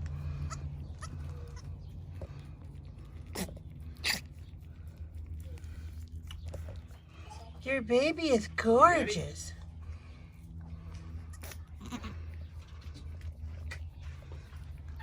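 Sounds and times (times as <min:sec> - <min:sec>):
steady low hum: 0:00.0 - 0:15.0
goats bleating: 0:11.3 - 0:12.2.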